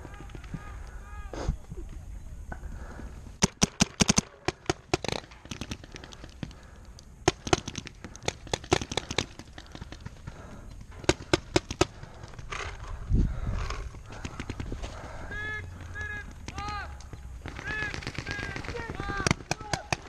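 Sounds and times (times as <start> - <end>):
paintball markers firing: 3.4 - 12.8, 13.7 - 20.0.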